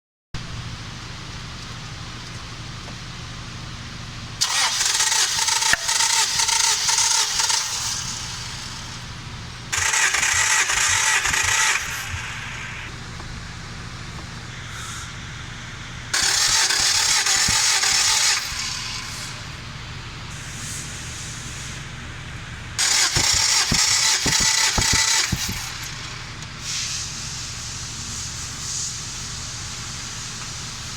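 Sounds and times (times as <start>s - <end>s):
engine idling: 0.4s - 30.9s
loud hissing bursts: 4.4s - 12.9s, 14.4s - 19.7s, 20.3s - 21.8s, 22.8s - 30.9s.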